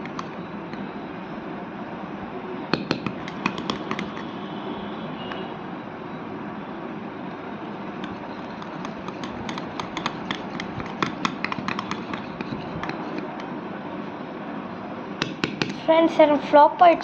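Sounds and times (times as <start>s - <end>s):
utensil clicking in sticky slime: 2.8s - 4.3s, 8.0s - 13.5s.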